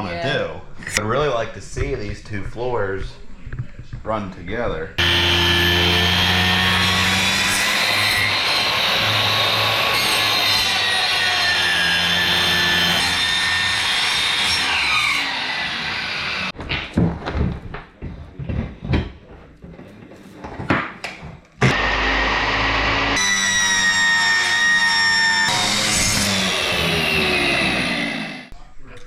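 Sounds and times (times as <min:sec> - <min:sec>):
power saw cutting wood: 0:05.0 - 0:16.6, 0:21.6 - 0:28.5.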